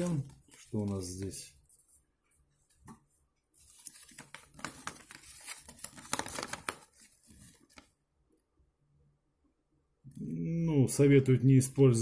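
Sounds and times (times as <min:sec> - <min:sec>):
packaging rustling and crinkling: 0:00.0 - 0:02.0, 0:03.5 - 0:08.0.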